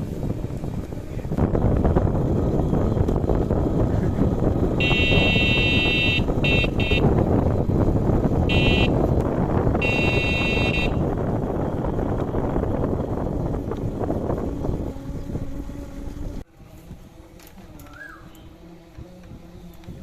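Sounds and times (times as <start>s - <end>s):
wind and road noise: 0.0s - 20.0s
buzzing electric vehicle horn: 3.7s - 16.4s.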